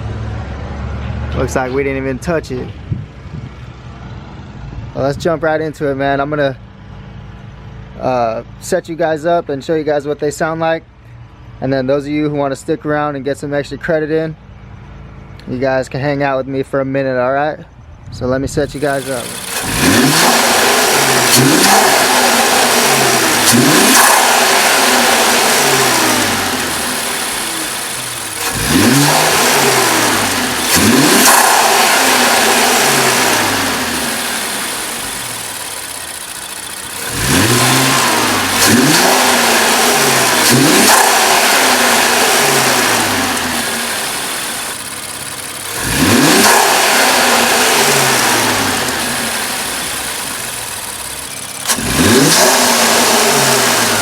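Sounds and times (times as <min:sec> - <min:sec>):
engine intake noise: 0:18.5 - 0:54.0
car engine revving: 0:18.6 - 0:54.0.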